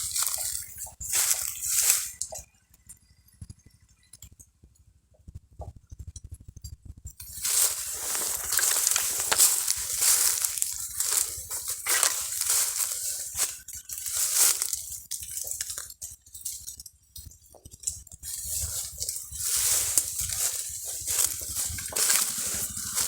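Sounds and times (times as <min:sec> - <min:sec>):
dry leaves and twigs crunching: 0:00.0 - 0:02.4, 0:07.2 - 0:23.0.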